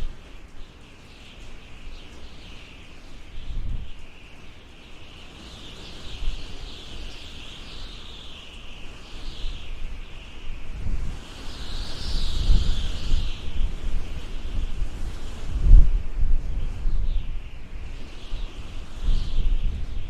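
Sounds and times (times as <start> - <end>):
wind howling: 1.3 - 20.0
low rumbling gusts: 8.9 - 20.0.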